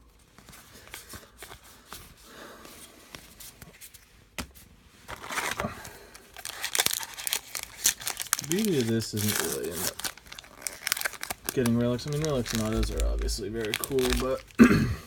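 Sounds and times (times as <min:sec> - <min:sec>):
foil wrapper crinkling and tearing: 0:05.1 - 0:14.6
trading cards clicking and rustling: 0:05.1 - 0:14.6.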